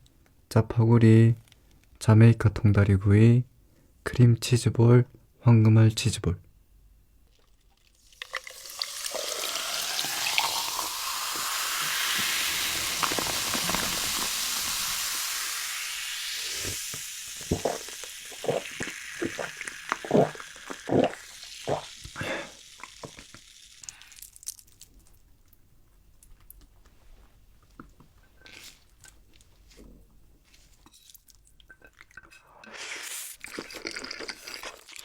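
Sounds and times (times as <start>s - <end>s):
food sizzling: 7.9s - 24.7s.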